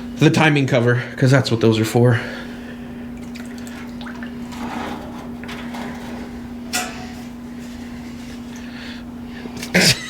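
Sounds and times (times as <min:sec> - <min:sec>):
parts cleaner humming: 0:02.1 - 0:09.2
metal parts clattering: 0:03.8 - 0:07.5.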